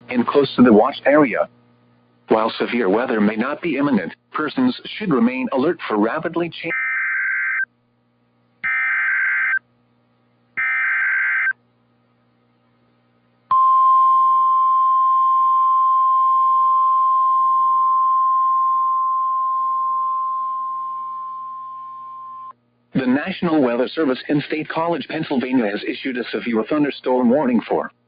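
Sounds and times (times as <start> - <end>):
steady warning alarm tone: 6.7 - 7.7, 8.6 - 9.6, 10.6 - 11.6
warbling data tones: 6.7 - 7.7, 8.6 - 9.6, 10.6 - 11.6.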